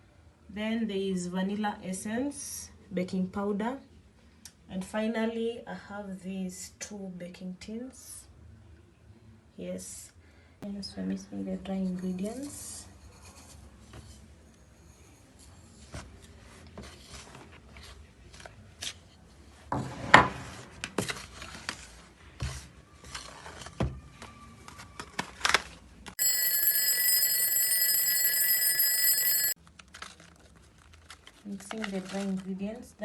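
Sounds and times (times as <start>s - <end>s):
electronic ringing tone: 26.2s - 29.6s.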